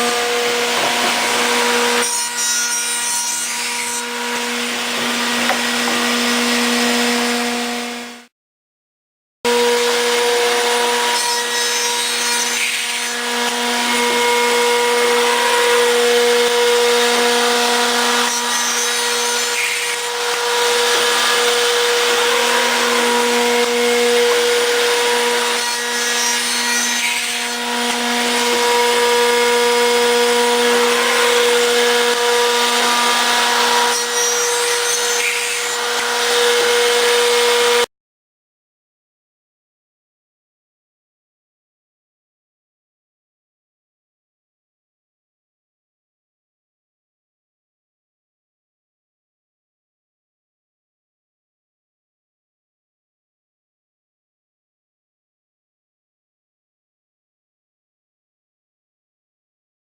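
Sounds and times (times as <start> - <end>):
cutters machining wood: 0.0 - 8.2, 9.5 - 37.9.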